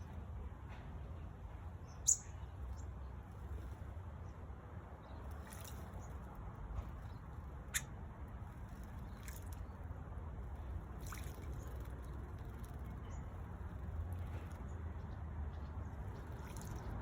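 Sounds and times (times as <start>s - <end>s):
water splashing and dripping: 5.2s - 9.8s, 10.5s - 13.0s, 16.0s - 17.0s.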